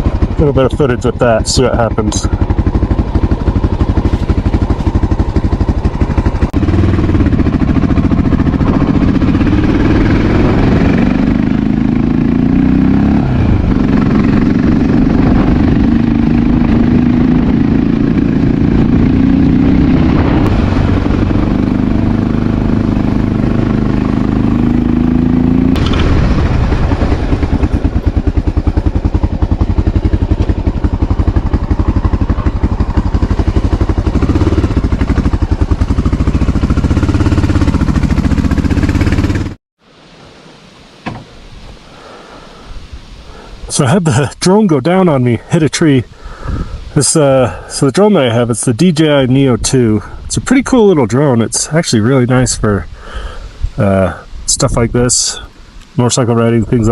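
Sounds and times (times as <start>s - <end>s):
motorcycle engine idling and revving: 0.0s - 39.6s.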